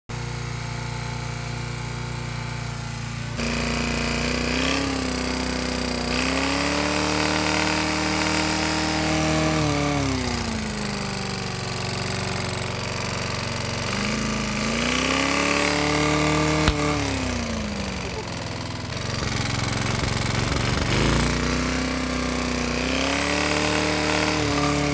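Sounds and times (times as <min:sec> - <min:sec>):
small engine with rod knock: 0:00.1 - 0:24.9
sharp click: 0:16.6 - 0:16.9.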